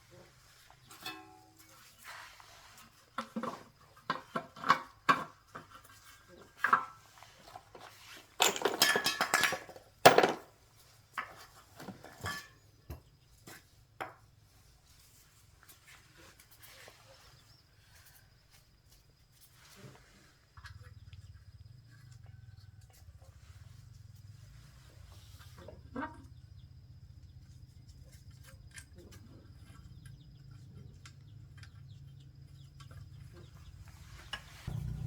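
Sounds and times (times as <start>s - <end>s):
objects rattling: 2.7s - 12.8s
hard objects knocking and clinking: 8.4s - 10.5s.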